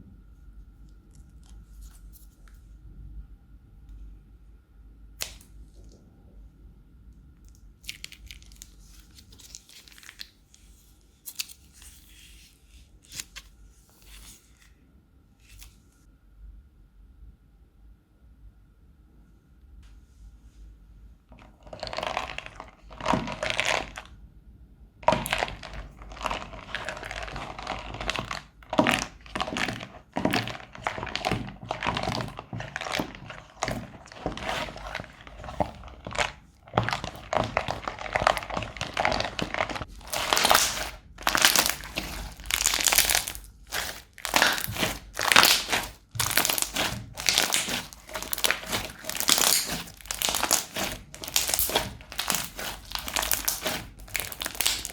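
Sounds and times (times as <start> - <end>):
crunchy slime crackling: 21.4 - 24.2, 25.0 - 54.9.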